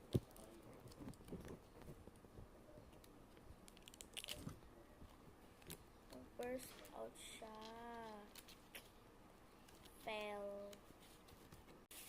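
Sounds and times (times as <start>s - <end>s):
crackles: 0.0s - 9.0s
wrapping crinkling: 3.7s - 4.6s.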